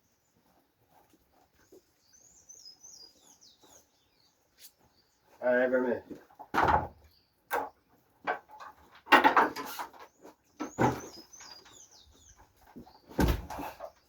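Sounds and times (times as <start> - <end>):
bird chirping: 0.0 - 6.0, 9.7 - 14.0
knocks and thumps: 6.1 - 10.0, 10.6 - 11.3, 12.7 - 13.9.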